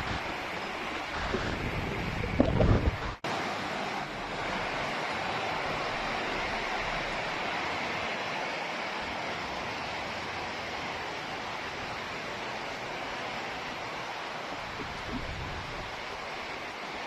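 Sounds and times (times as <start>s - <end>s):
strong wind on microphone: 0.0s - 3.2s, 14.5s - 16.2s.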